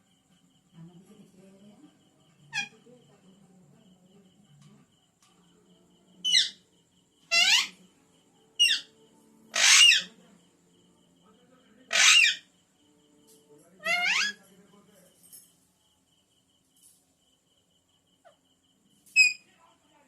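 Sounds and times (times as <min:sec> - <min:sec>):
parrot harsh calls: 0:02.5 - 0:02.7, 0:06.2 - 0:06.6, 0:07.3 - 0:07.8, 0:08.6 - 0:08.9, 0:09.5 - 0:10.2, 0:11.9 - 0:12.5, 0:13.8 - 0:14.4.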